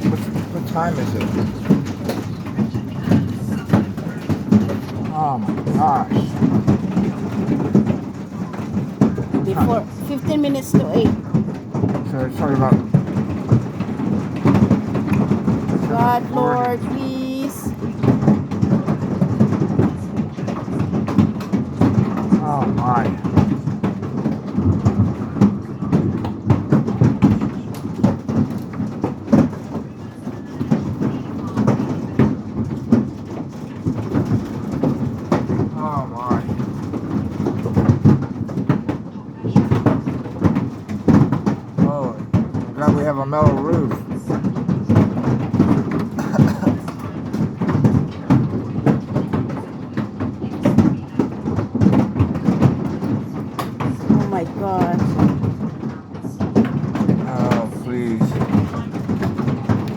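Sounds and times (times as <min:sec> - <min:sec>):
heavy rain rush: 0:00.0 - 0:18.1
hailstones clattering: 0:00.0 - 0:59.9.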